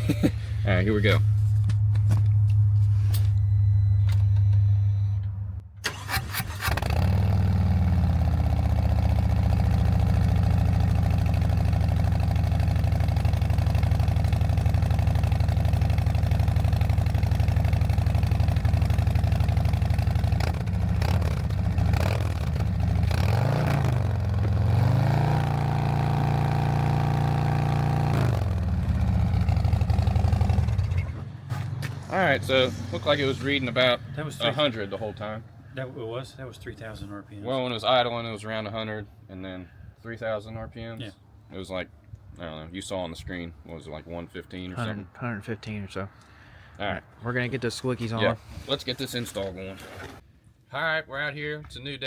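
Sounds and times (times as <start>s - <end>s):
low hum: 0.0s - 5.7s
motorcycle engine starting and idling: 0.0s - 35.5s
motorcycle engine revving: 5.9s - 35.4s.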